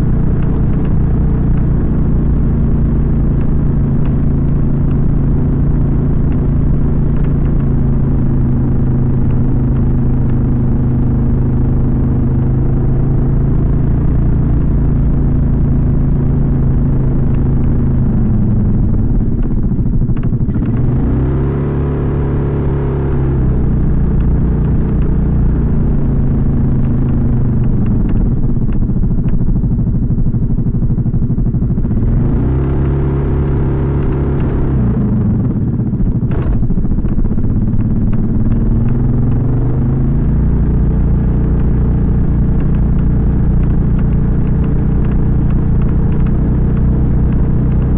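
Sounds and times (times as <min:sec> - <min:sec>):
scooter engine revving: 0:16.5 - 0:47.9.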